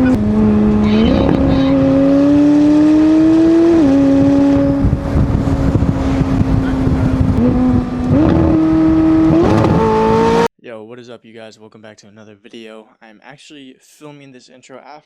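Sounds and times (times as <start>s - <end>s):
sports car engine revving: 0.0s - 10.5s.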